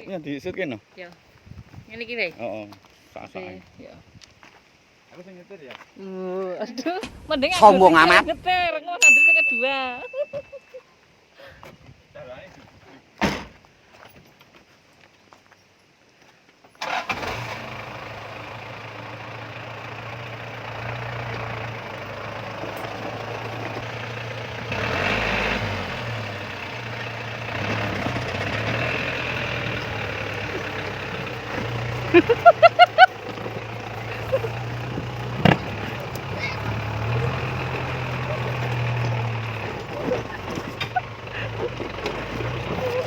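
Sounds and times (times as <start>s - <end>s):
diesel engine starting and running: 7.0s - 8.7s, 16.8s - 43.0s
short high-pitched beeps: 9.0s - 10.6s.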